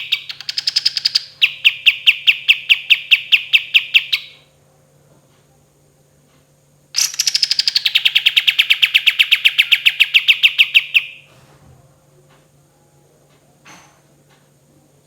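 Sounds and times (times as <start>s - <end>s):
songbird trilling: 0.0s - 4.4s, 7.0s - 11.2s.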